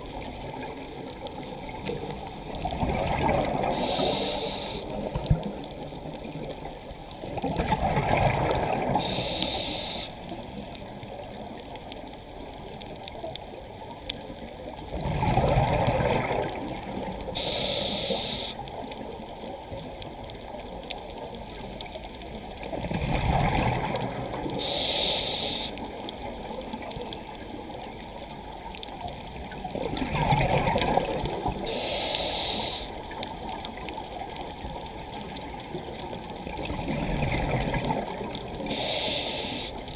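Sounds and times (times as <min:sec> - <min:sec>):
exhaled bubbles gurgling: 0:00.0 - 0:39.9
faint clicking crackles: 0:00.0 - 0:39.9
regulator inhalation hiss: 0:03.7 - 0:05.3, 0:09.0 - 0:10.3, 0:17.4 - 0:18.6, 0:24.6 - 0:25.9, 0:31.7 - 0:33.0, 0:38.6 - 0:39.9.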